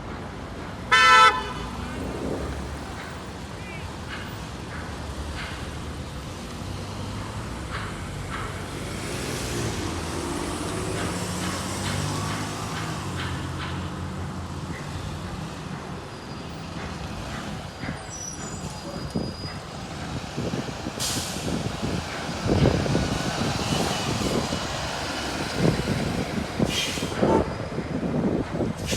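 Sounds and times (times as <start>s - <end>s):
bus engine passing: 0.0s - 28.9s
air brake hiss: 21.0s - 21.6s, 26.6s - 27.3s.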